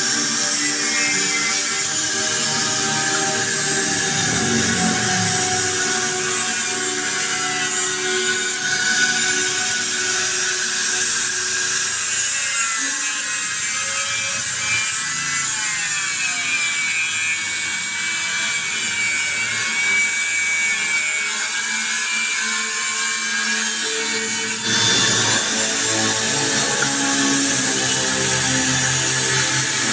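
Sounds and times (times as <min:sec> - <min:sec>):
power tool whining on metal: 0:00.0 - 0:29.9.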